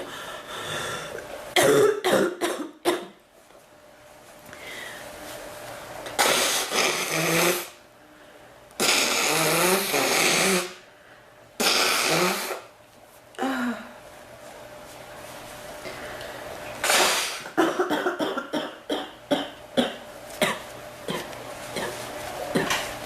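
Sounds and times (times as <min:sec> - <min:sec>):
woman coughing: 0:01.6 - 0:03.2, 0:16.9 - 0:22.8.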